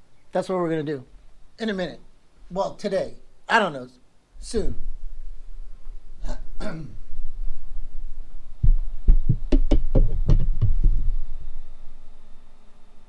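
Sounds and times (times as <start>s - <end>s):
knocks and low clunks: 8.6s - 11.4s.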